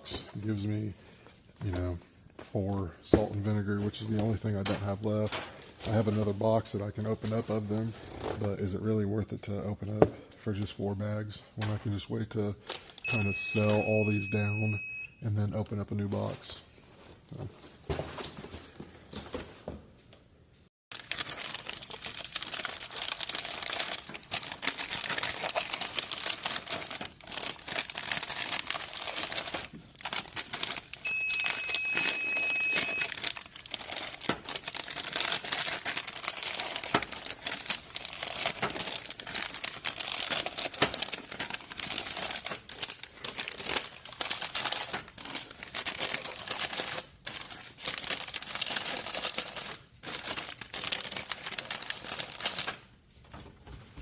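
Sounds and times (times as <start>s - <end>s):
steady beep: 13.1s - 15.2s, 31.1s - 33.1s
plastic bags crinkling: 20.9s - 53.2s.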